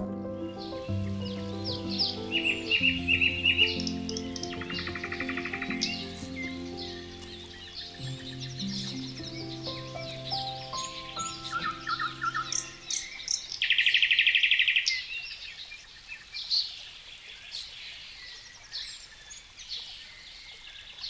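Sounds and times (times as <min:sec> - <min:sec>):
background music: 0:00.0 - 0:13.6
birds chirping and calling: 0:00.6 - 0:21.0
bird rapid trill: 0:00.9 - 0:15.1.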